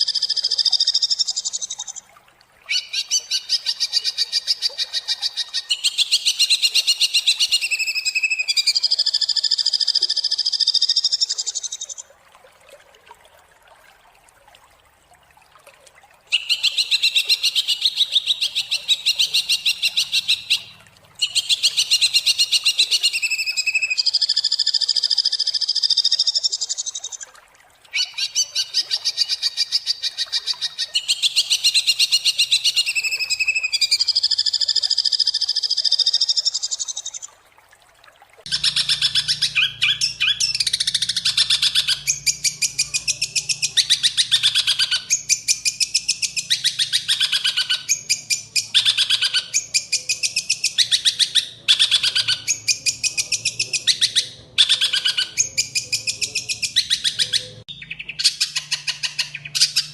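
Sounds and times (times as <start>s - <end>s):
bird singing harsh rapid notes: 38.5s - 59.9s.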